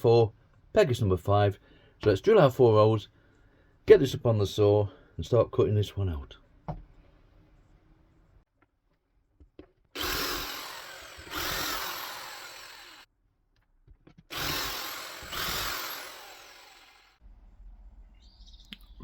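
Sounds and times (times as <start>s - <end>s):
power drill boring through wood: 10.0s - 13.1s, 14.3s - 17.2s.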